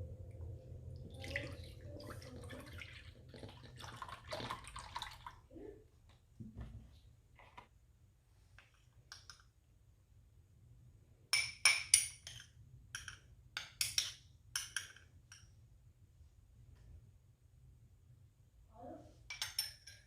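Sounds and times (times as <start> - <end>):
kitchenware clinking: 19.3 - 20.0.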